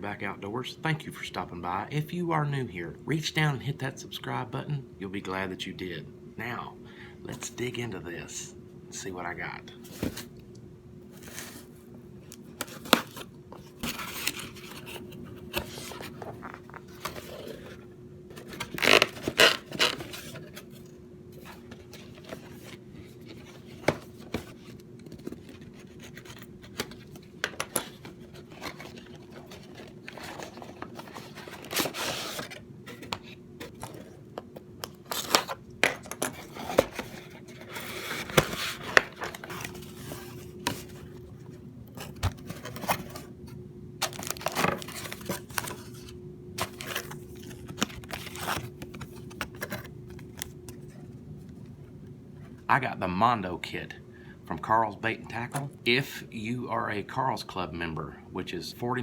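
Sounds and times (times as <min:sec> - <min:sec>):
packaging scraping and tearing: 0:12.6 - 0:20.8, 0:21.4 - 0:41.2, 0:41.9 - 0:43.3, 0:44.0 - 0:51.0.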